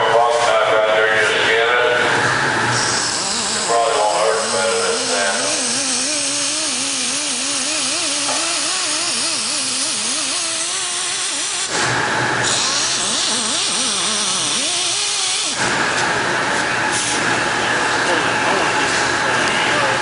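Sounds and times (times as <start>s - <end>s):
angle grinder grinding: 2.7s - 16.0s.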